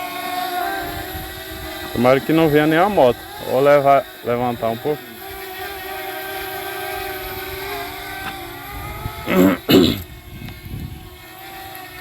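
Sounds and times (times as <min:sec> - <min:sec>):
motor hum: 0:00.0 - 0:12.0
person's voice or cough: 0:09.3 - 0:10.1.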